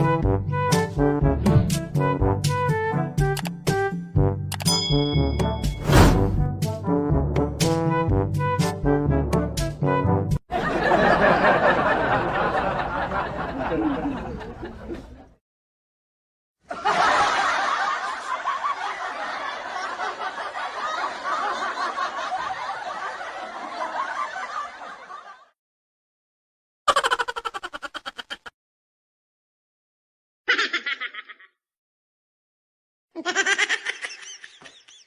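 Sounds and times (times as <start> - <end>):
canned laughter: 26.9 - 28.5, 30.5 - 31.6, 33.2 - 35.0.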